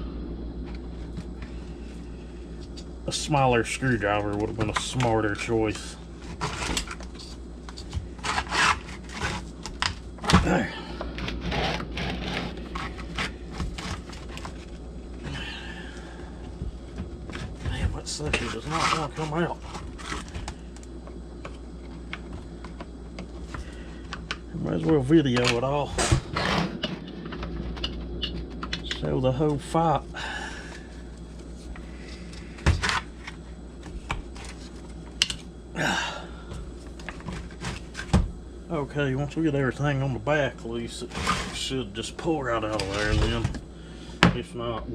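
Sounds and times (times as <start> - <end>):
steady low hum: 0.0 - 44.9
short rasp: 11.2 - 14.0.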